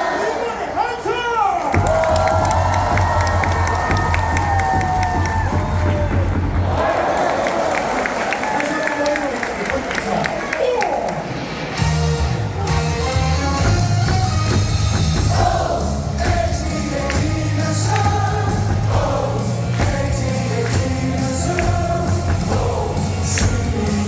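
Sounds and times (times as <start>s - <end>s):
loudspeaker music with steady beat: 11.8s - 24.0s
crowd singing in unison: 14.5s - 24.0s.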